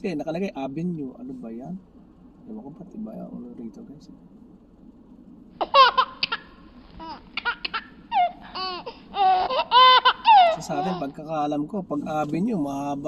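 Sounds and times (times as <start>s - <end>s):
small child babbling and squealing: 7.0s - 11.1s.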